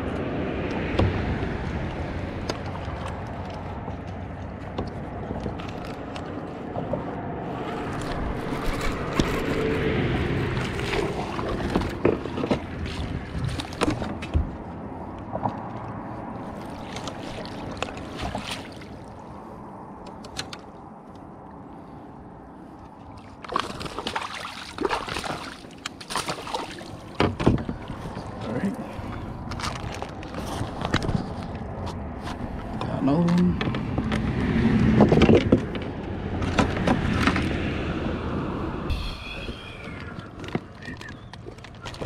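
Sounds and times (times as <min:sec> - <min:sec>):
water noise: 0:00.0 - 0:42.0
wind: 0:00.0 - 0:42.0
gear clicks and knocks: 0:29.4 - 0:37.6, 0:40.0 - 0:42.0.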